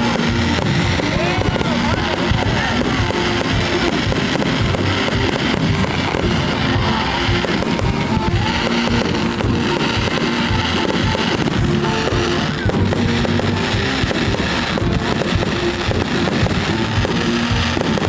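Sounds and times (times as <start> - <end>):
fireworks crackling: 0.0 - 18.0
guitar-led music: 0.0 - 18.0.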